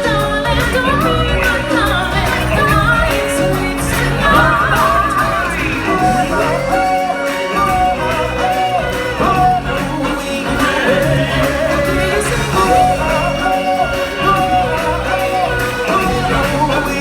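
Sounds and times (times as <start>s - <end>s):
instrumental backing: 0.0s - 17.0s
voices singing: 0.0s - 17.0s.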